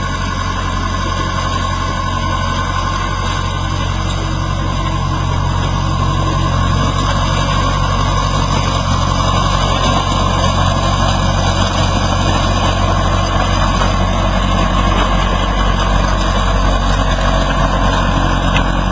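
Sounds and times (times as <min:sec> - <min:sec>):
skid steer engine running: 0:00.0 - 0:18.9
steady whine: 0:00.0 - 0:18.9.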